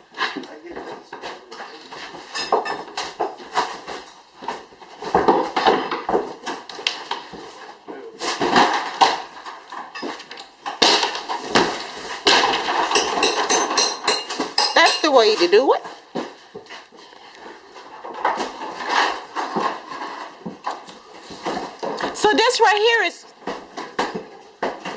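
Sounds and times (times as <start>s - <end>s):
demolition bangs and clattering: 2.1s - 16.4s, 17.8s - 22.8s.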